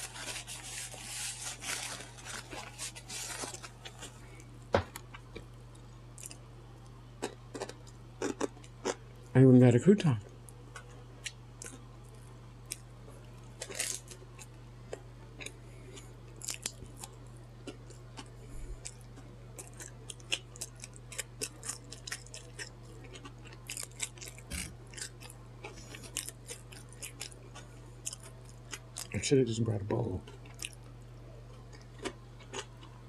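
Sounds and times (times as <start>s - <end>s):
chewing crunches and mouth clicks: 5.0s - 9.3s, 10.2s - 29.2s, 30.2s - 33.0s.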